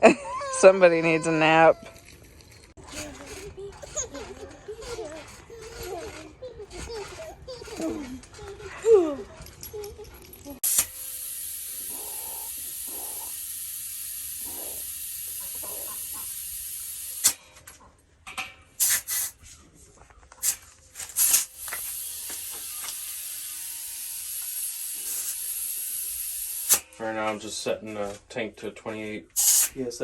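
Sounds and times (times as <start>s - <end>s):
compressed air hissing: 10.6s - 17.4s, 18.8s - 19.4s, 20.4s - 27.0s, 29.4s - 29.8s.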